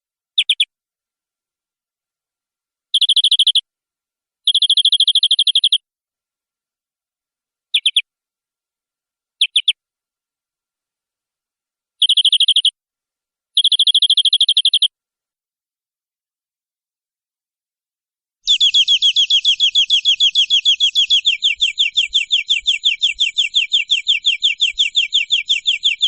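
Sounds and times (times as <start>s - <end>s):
canary singing trills: 0.4s - 0.7s, 4.5s - 5.8s, 7.7s - 8.1s, 9.4s - 9.8s, 12.0s - 12.8s, 13.6s - 14.9s, 18.4s - 26.0s.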